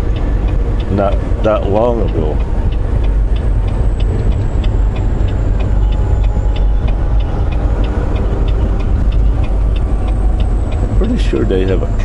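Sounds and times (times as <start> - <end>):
diesel engine rumbling: 0.0 - 12.0
light even ticking: 0.0 - 12.0.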